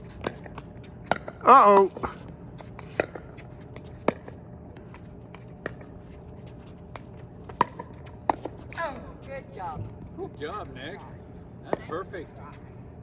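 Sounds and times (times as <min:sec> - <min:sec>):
ball bouncing: 0:07.0 - 0:12.6.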